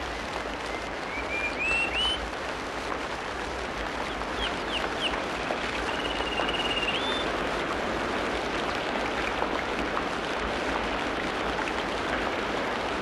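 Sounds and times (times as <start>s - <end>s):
steady rain falling: 0.0s - 13.0s
songbirds whistling: 0.6s - 2.2s, 4.1s - 7.3s.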